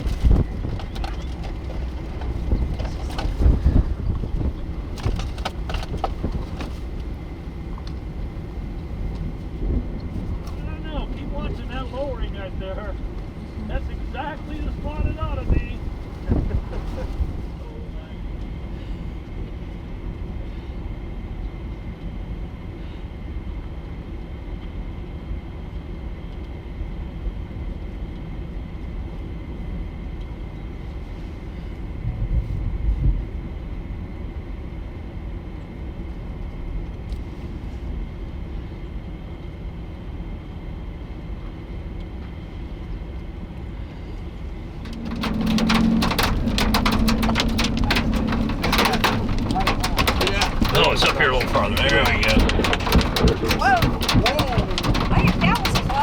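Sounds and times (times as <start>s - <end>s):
hail clattering on vehicle roof: 0.0s - 9.4s, 10.1s - 12.5s, 13.2s - 17.6s, 44.6s - 56.0s
road drone inside vehicle: 0.0s - 56.0s.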